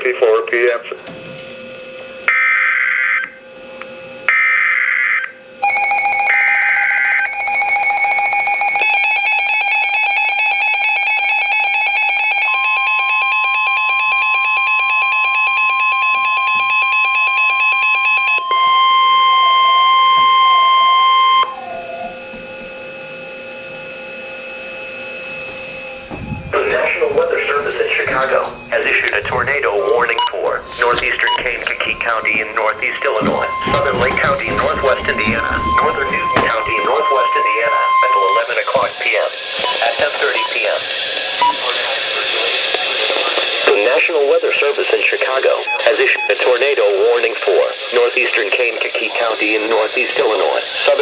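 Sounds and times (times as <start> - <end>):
buzzy alarm tone: 11.7 - 38.7.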